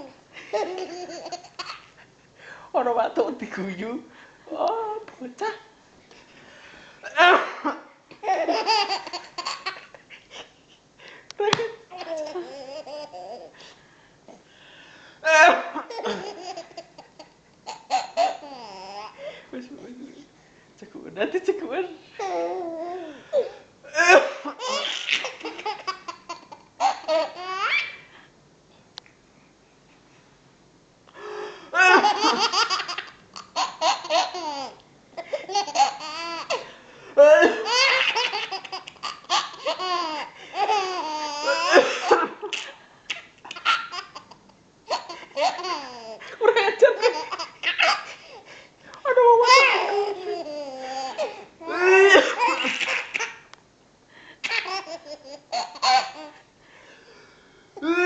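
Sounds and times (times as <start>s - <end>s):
baby laughing: 0.0s - 1.9s, 8.2s - 10.0s, 11.5s - 13.5s, 15.3s - 19.2s, 24.0s - 28.0s, 31.8s - 48.4s, 49.4s - 53.4s, 54.4s - 56.4s.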